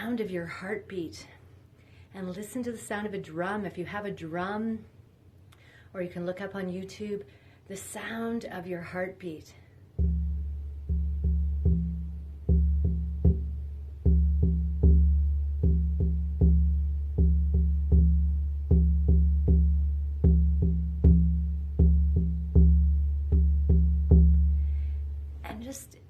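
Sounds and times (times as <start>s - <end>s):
low deep drum strokes: 10.0s - 25.4s.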